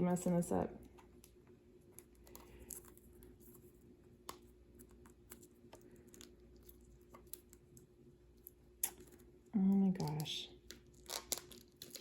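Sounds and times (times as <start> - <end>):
fingernails crinkling shrink wrap: 4.2 - 12.0.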